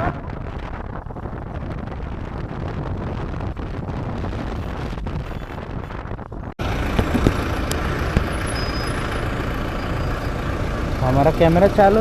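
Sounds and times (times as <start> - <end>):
wind buffeting microphone: 0.0 - 8.4
traffic noise: 3.5 - 12.0
motorcycle engine: 6.6 - 12.0.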